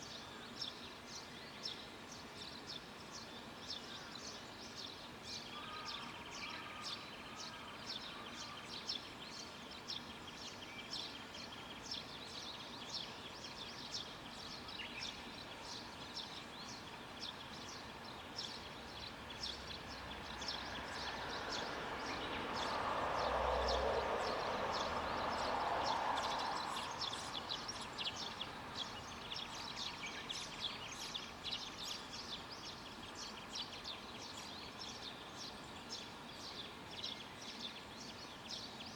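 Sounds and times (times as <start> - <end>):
small birds chirping: 11.5 - 38.9
vehicle passing: 20.8 - 27.1.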